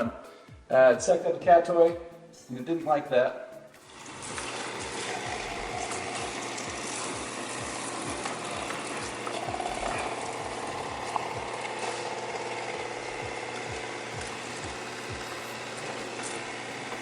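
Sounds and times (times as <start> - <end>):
robot vacuum whirring and rattling: 3.9 - 17.0.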